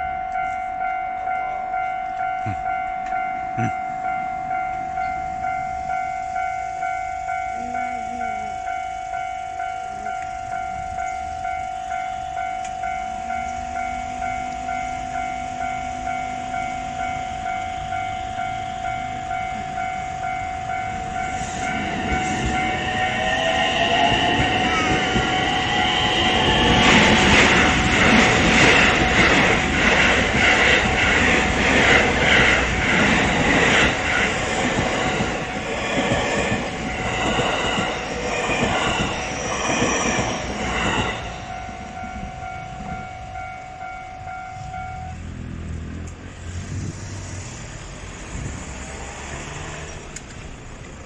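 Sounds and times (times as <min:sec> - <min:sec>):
level crossing warning bell: 0:00.0 - 0:45.7
train wheels clacking over rail joints: 0:21.4 - 0:41.2.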